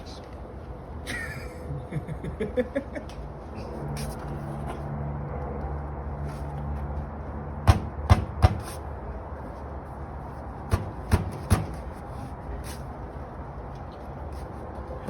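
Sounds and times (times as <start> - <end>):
low background hum: 0.0 - 15.0
sharp knocks: 7.6 - 8.7.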